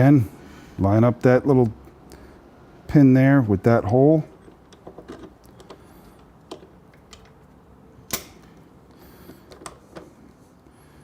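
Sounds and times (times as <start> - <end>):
metal hardware clicking: 4.3 - 7.5, 8.1 - 8.6.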